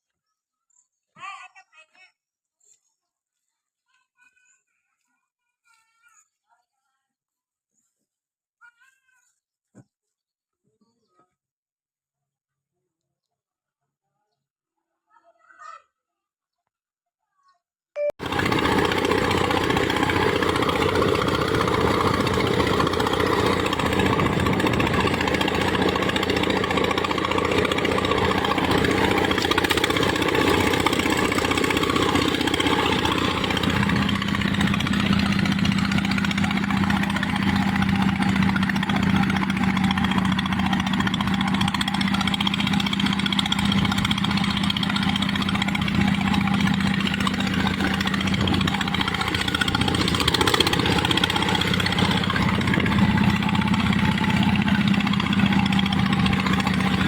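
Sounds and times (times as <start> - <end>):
drilling machine engine running: 18.2 - 57.0.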